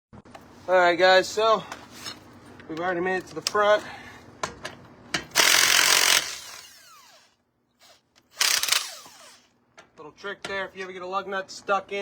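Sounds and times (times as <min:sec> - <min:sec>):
impact wrench whirring: 0:05.3 - 0:09.5.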